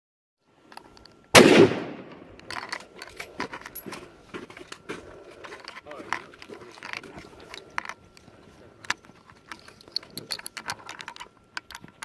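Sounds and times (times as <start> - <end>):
rifle being loaded by hand: 1.4 - 4.1, 8.8 - 12.0.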